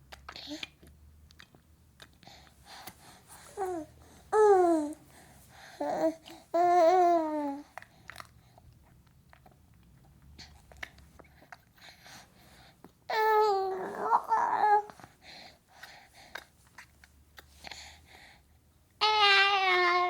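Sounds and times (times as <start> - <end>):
baby cooing and babbling: 3.5 - 5.0, 5.7 - 7.7, 13.1 - 15.0, 19.0 - 20.0.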